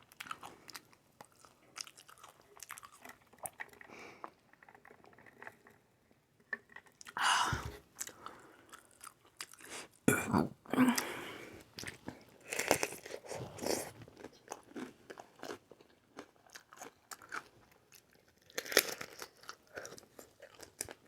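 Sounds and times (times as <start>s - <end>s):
crunching bites and chewing: 0.0s - 5.8s, 11.8s - 21.0s.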